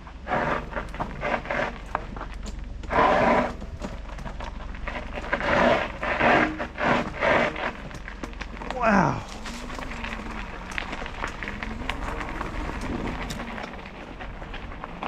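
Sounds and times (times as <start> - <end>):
tyres on dirt trail: 0.0 - 15.0
bike knocks and rattles: 0.4 - 15.0.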